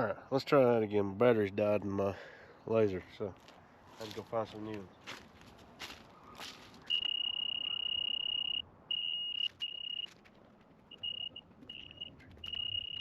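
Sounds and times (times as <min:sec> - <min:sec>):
laser level beeping: 0:06.9 - 0:10.1, 0:10.9 - 0:13.0.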